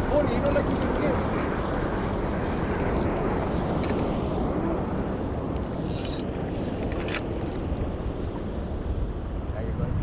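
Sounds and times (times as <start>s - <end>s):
wind buffeting microphone: 0.0s - 10.0s
water against hull: 0.8s - 8.6s.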